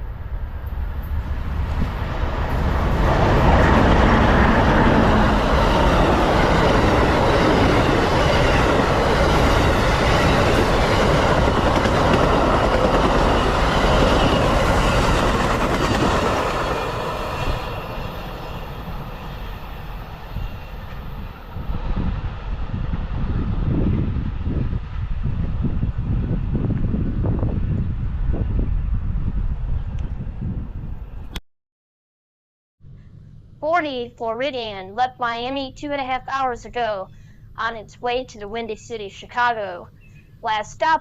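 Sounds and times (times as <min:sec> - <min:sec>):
passenger train rumbling past: 0:00.0 - 0:31.2.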